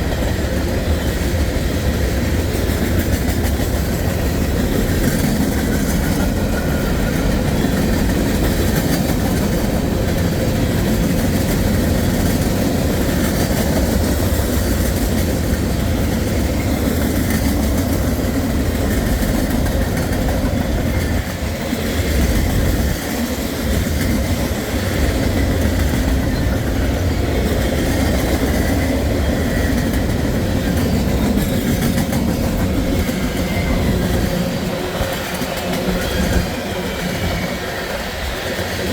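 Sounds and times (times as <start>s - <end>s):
train wheels rumbling on rails: 0.0s - 38.9s.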